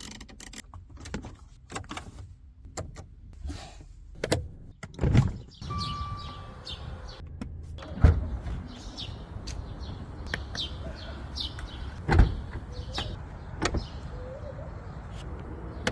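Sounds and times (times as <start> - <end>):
car low hum: 5.6 - 15.9.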